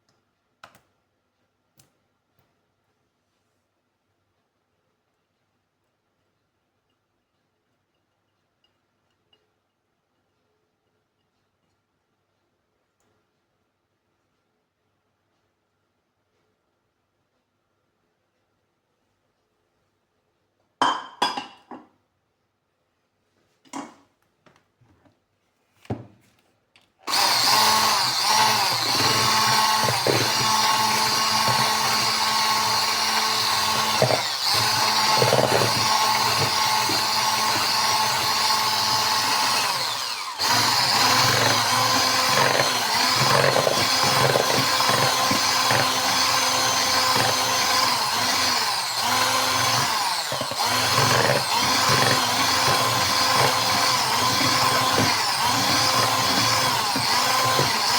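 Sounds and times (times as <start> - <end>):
small electric motor running: 27.1 - 57.9.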